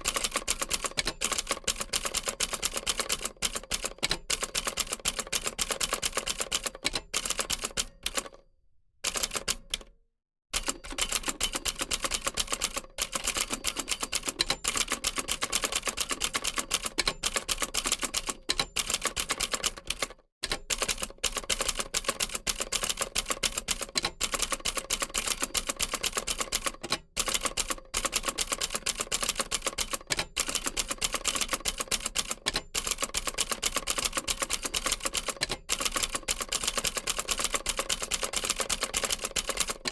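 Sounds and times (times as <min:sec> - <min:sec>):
typewriter keystrokes clattering: 0:10.6 - 0:39.9.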